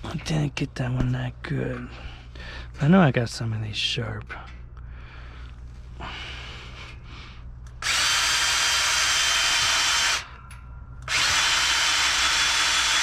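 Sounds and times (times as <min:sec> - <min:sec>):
power drill drilling into steel: 0:07.8 - 0:10.4, 0:11.1 - 0:13.0.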